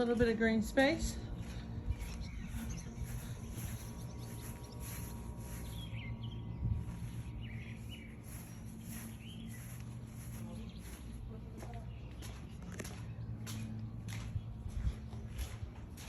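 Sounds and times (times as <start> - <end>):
low hum: 0.0 - 16.0
bird chirps: 1.9 - 11.2.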